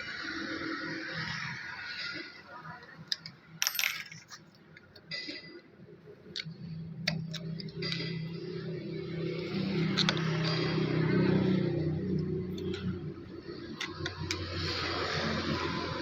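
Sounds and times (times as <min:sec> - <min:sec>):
small metal parts clinking: 0:03.1 - 0:05.5.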